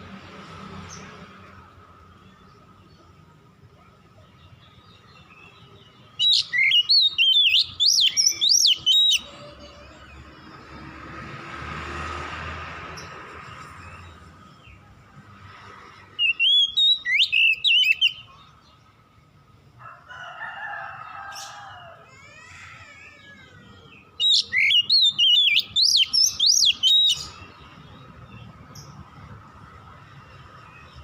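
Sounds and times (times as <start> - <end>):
bird whistling song: 6.2 - 9.4, 16.1 - 18.4, 24.2 - 27.7.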